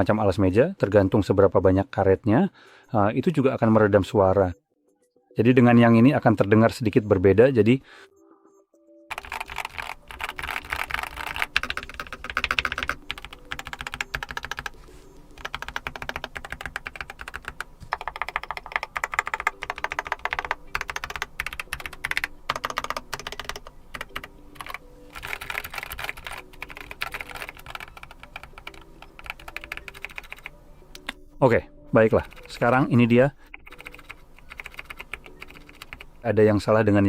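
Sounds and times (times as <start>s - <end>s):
keyboard keystroke clacks: 9.1s - 31.2s, 33.5s - 36.1s.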